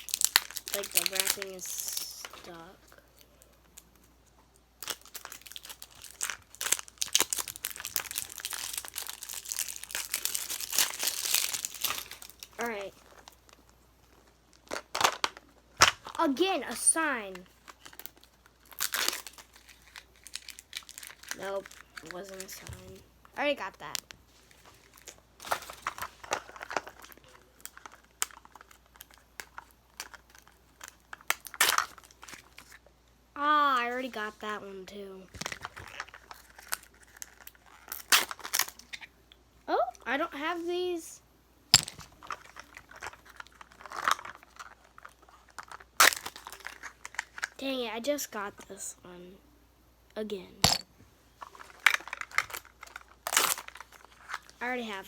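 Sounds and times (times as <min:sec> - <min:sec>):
plastic wrapping crinkling: 0:00.0 - 0:02.5, 0:04.8 - 0:16.2, 0:17.4 - 0:22.7, 0:23.8 - 0:32.8, 0:35.4 - 0:39.1, 0:41.7 - 0:47.6, 0:51.4 - 0:54.6.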